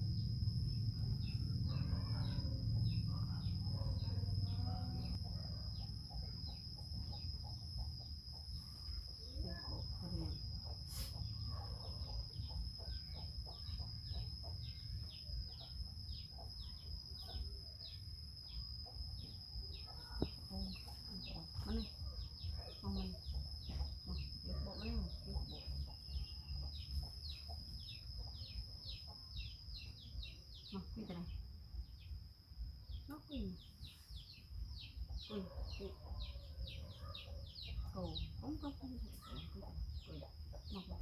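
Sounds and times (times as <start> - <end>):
steady high-pitched whine: 0.0 - 35.9
birds chirping: 32.9 - 41.0.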